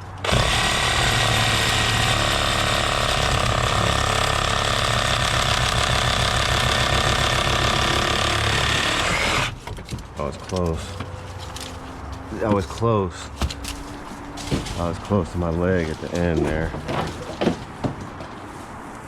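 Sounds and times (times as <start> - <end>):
power saw cutting tree: 0.0 - 9.6.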